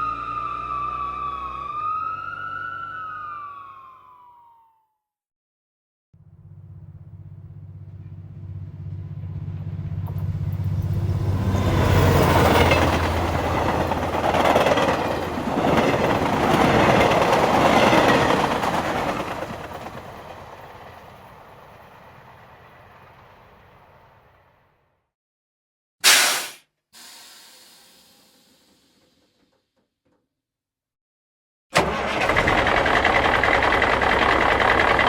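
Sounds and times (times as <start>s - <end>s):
vehicle passing by: 6.2s - 14.6s.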